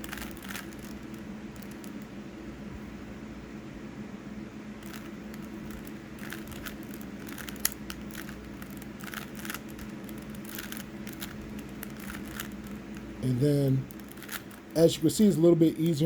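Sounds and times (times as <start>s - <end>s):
puzzle cube plastic clicks: 0.0s - 2.0s, 4.8s - 13.1s, 13.8s - 14.8s
steady low hum: 0.0s - 16.0s.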